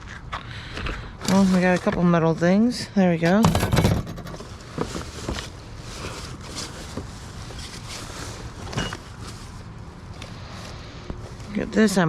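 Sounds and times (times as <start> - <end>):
items knocking and rustling: 3.3 - 5.6.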